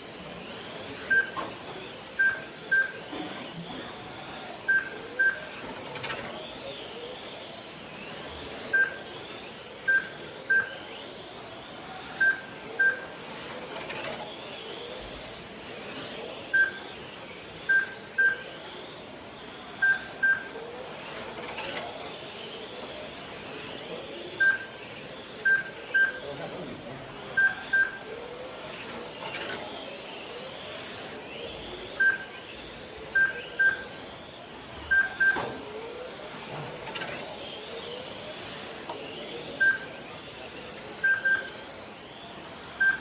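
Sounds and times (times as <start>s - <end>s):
electric rc cars whining: 0.0s - 43.0s
short electronic beeps: 34.9s - 35.5s, 41.0s - 41.5s, 42.8s - 43.0s.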